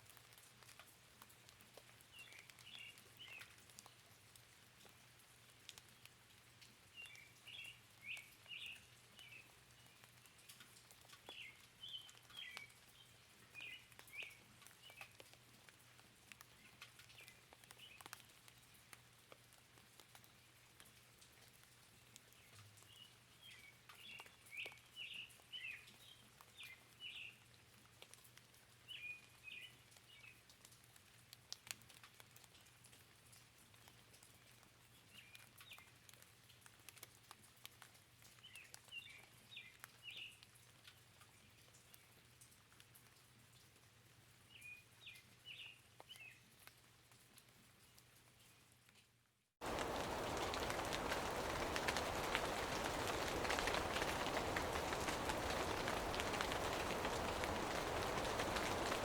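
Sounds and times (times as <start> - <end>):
raindrop patter: 0.0 - 59.0
soft rain hiss: 0.0 - 59.0
birds chirping: 49.6 - 59.0.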